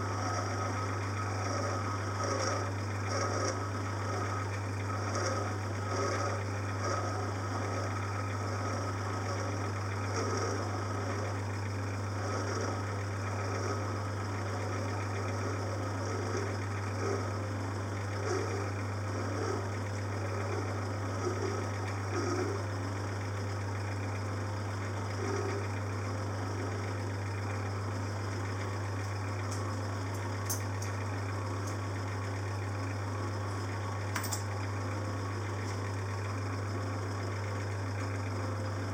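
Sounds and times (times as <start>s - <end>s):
metal lathe humming: 0.0s - 38.9s.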